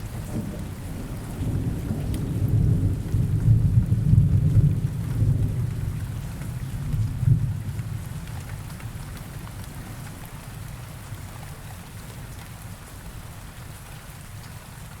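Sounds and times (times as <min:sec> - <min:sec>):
rain pattering: 0:00.0 - 0:15.0
thunder rumble: 0:00.1 - 0:06.0.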